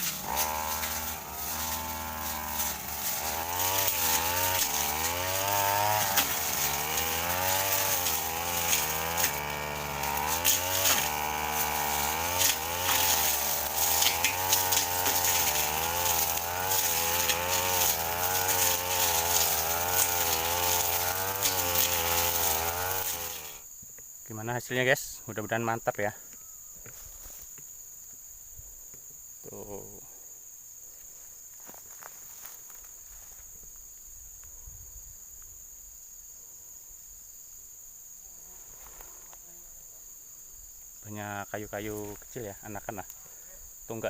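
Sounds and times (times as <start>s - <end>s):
blade ticking on stems: 0.0s - 23.6s
brush cutter engine running: 0.0s - 23.6s.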